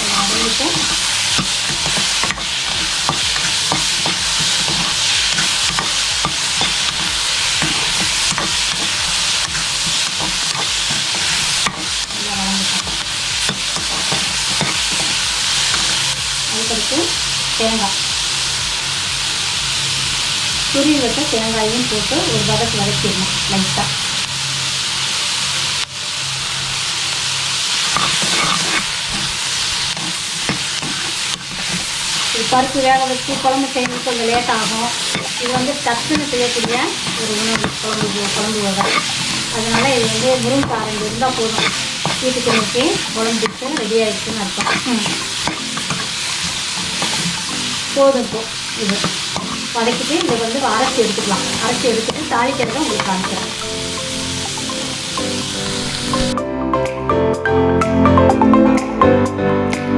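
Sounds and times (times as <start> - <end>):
utensil scraping a pan: 0.0 - 16.2, 27.7 - 56.4
vegetables sizzling in oil: 0.0 - 56.4.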